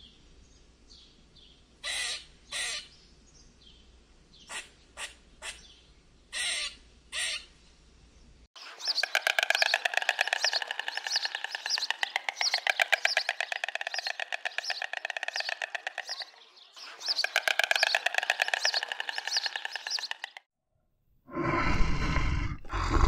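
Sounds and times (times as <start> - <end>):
animal calling in rapid pulses: 8.7 - 20.4.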